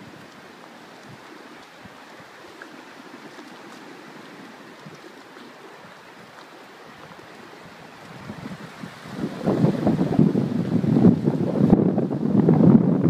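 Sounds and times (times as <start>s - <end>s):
rough sea and surf: 0.0s - 13.0s
strong wind: 5.7s - 13.0s.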